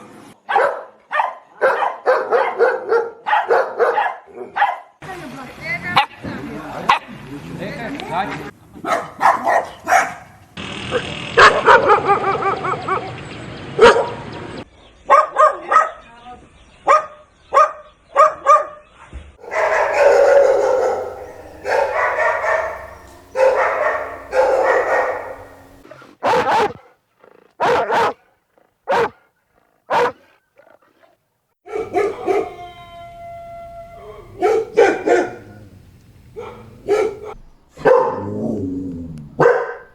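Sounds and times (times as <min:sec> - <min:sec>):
dogs barking: 0:00.5 - 0:05.0, 0:08.8 - 0:10.4, 0:11.4 - 0:12.8, 0:13.8 - 0:14.3, 0:15.1 - 0:16.0, 0:16.8 - 0:18.8, 0:19.4 - 0:30.8, 0:31.7 - 0:32.7, 0:34.0 - 0:39.9
dog whining: 0:19.4 - 0:26.7, 0:31.7 - 0:39.9
dog long drawn-out calls: 0:19.4 - 0:30.6, 0:31.7 - 0:39.9.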